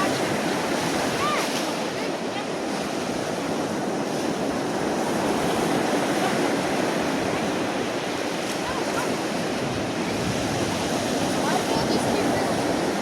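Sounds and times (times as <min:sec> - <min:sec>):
surf breaking on beach: 0:00.0 - 0:13.0.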